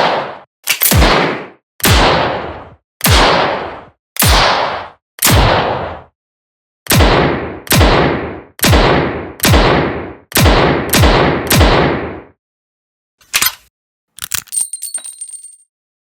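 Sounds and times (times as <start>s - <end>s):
metallic clicks: 13.2s - 15.6s.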